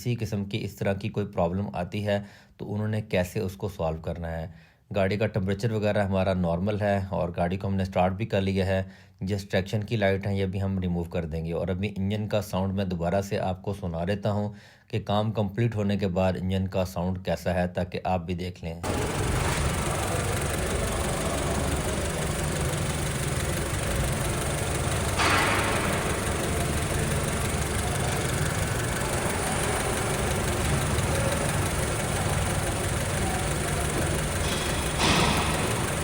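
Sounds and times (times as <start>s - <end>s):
car engine idling: 18.8s - 36.0s.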